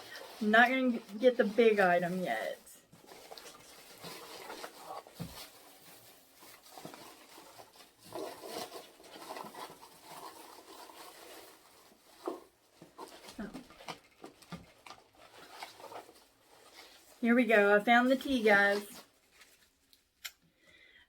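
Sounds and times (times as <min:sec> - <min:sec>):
packaging rustling and knocking: 0:00.0 - 0:17.0.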